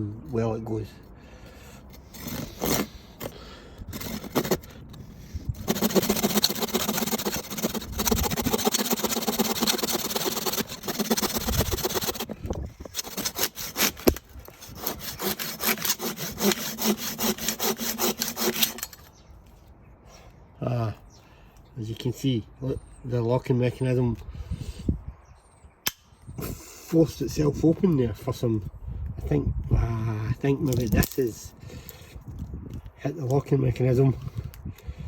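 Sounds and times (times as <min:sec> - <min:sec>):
saw cutting wood: 0:02.0 - 0:19.0.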